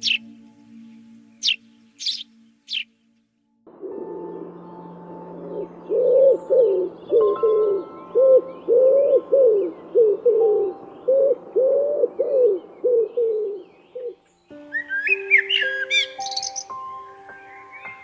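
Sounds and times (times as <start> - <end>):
bird cooing: 0.0 - 0.2, 3.8 - 14.2
faint higher chirping: 0.0 - 3.2, 4.2 - 18.0.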